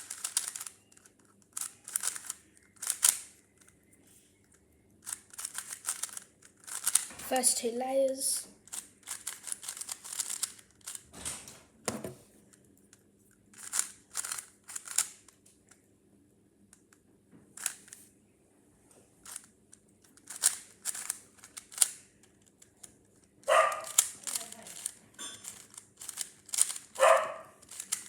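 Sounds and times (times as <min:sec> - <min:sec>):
puzzle cube clicking and clacking: 0:00.0 - 0:03.8, 0:04.4 - 0:07.1, 0:08.6 - 0:11.1, 0:13.6 - 0:15.4, 0:17.6 - 0:18.0, 0:19.2 - 0:28.0.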